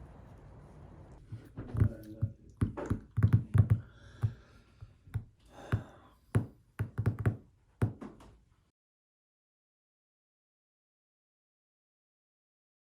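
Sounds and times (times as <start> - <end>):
irregular thumps and knocks: 1.4 - 4.4, 5.1 - 8.3.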